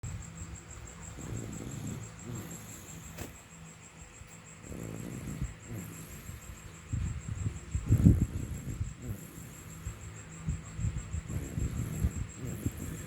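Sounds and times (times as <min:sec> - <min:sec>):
person snoring: 0:01.2 - 0:03.3, 0:04.6 - 0:06.5, 0:07.9 - 0:10.0, 0:11.2 - 0:13.0.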